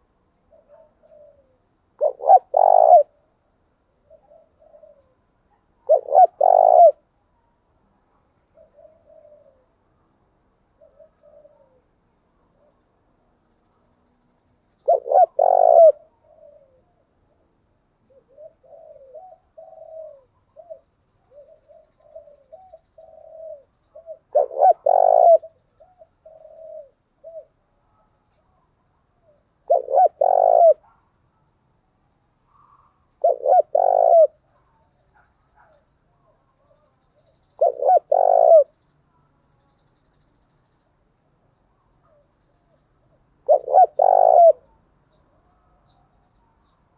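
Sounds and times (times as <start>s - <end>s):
dove cooing: 0.0s - 3.2s, 4.0s - 7.1s, 8.5s - 9.9s, 10.7s - 12.8s, 14.8s - 17.4s, 18.0s - 31.0s, 32.5s - 38.8s, 43.4s - 44.8s.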